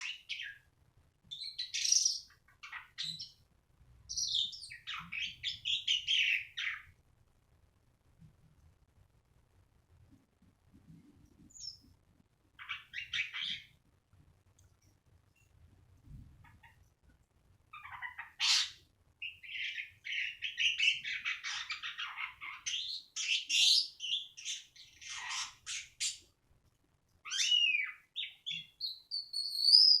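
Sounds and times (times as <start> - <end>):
starling singing: 1.3 - 3.3, 4.1 - 6.9, 12.6 - 13.8, 17.7 - 26.2, 27.2 - 30.0.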